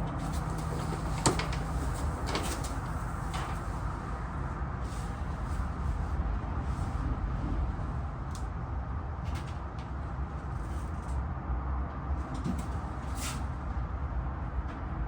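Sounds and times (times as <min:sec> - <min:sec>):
low rumble: 0:00.0 - 0:11.2.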